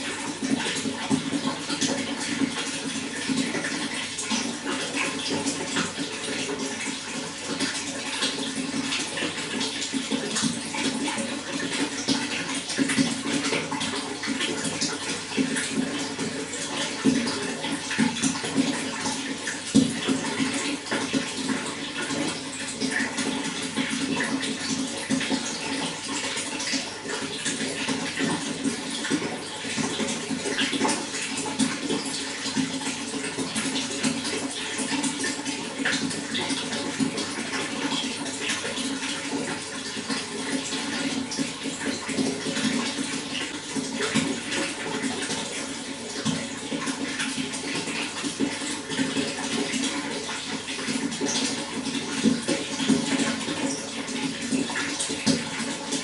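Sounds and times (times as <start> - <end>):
running water flowing: 0.0 - 56.0.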